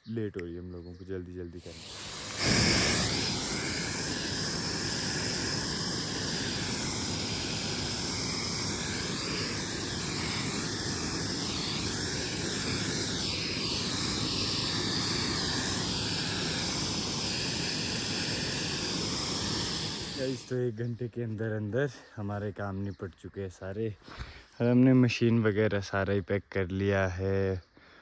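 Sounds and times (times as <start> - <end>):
spray machine motor and pump: 1.6 - 20.5.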